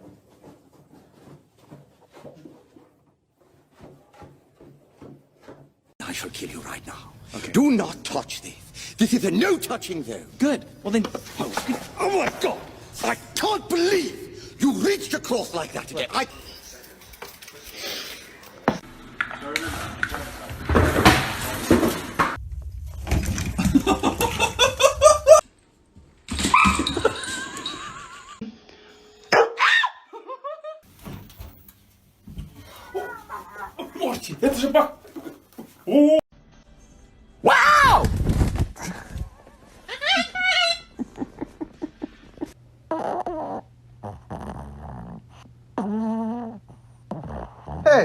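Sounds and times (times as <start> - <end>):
dog yapping: 29.3 - 30.0, 32.6 - 34.0
animal vocalising: 32.6 - 34.0.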